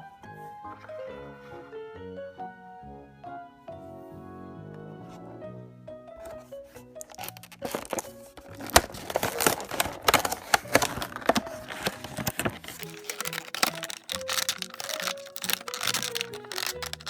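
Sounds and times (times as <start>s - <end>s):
plastic toys and packaging crackling: 7.0s - 8.1s, 12.6s - 17.0s.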